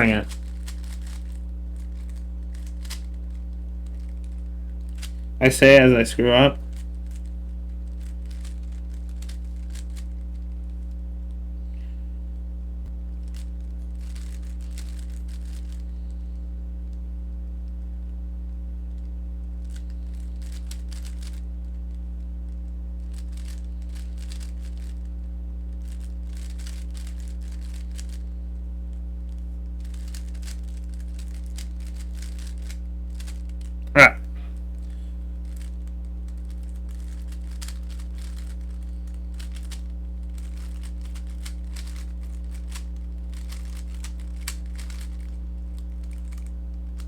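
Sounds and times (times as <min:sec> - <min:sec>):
rubik's cube plastic clicks: 0:00.0 - 0:05.2, 0:08.0 - 0:10.3, 0:13.3 - 0:15.8, 0:19.7 - 0:21.4, 0:23.1 - 0:25.0, 0:25.8 - 0:28.2, 0:29.8 - 0:33.7, 0:36.4 - 0:47.0
low electrical hum: 0:00.0 - 0:47.0.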